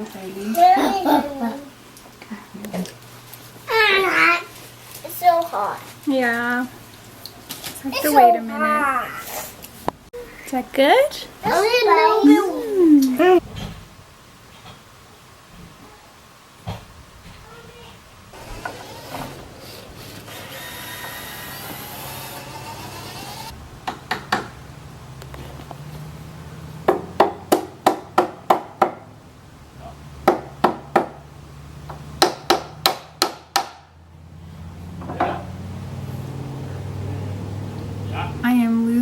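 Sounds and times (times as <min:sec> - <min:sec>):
hammer driving nails into wood: 0:32.2 - 0:33.8.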